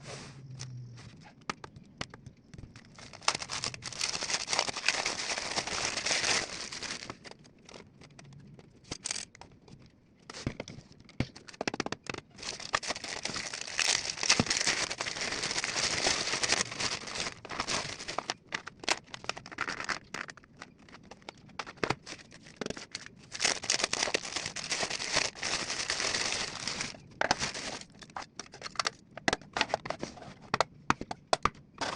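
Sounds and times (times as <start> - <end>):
packaging crinkling and tearing: 2.8 - 9.3, 11.4 - 29.0.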